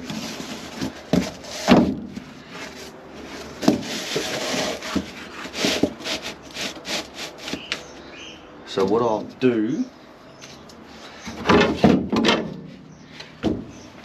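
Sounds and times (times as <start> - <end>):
board scraping: 0.0 - 7.8.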